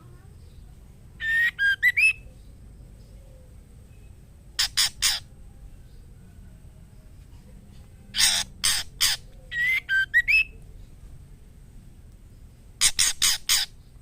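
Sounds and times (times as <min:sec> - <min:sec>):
harsh raspy bird notes: 0:01.2 - 0:02.3, 0:04.6 - 0:05.3, 0:08.1 - 0:10.5, 0:12.8 - 0:13.9
whistled bird notes: 0:01.2 - 0:02.4, 0:08.1 - 0:10.6.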